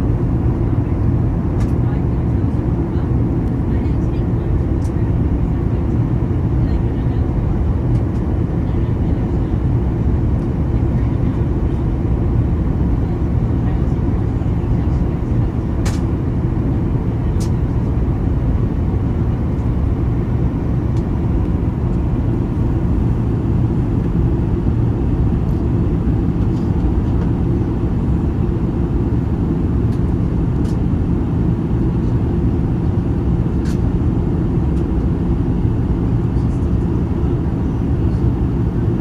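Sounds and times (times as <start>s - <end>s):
airplane cabin drone: 0.0s - 39.0s
light ticks in cabin: 1.6s - 1.9s, 4.7s - 5.1s, 7.9s - 8.3s, 15.8s - 16.1s, 17.3s - 17.6s, 29.9s - 30.8s, 33.6s - 33.9s.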